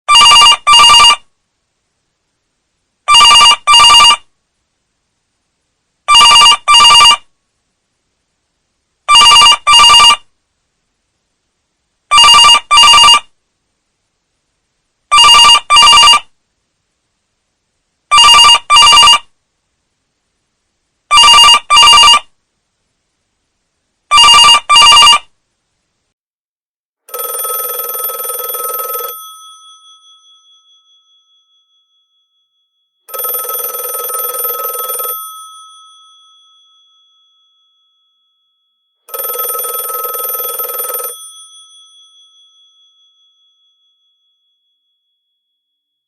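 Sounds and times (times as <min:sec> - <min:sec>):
telephone bell ringing: 0:00.1 - 0:01.2, 0:03.1 - 0:04.2, 0:06.1 - 0:07.2, 0:09.1 - 0:10.2, 0:12.1 - 0:13.2, 0:15.1 - 0:16.2, 0:18.1 - 0:19.2, 0:21.1 - 0:22.2, 0:24.1 - 0:25.2, 0:27.1 - 0:45.7.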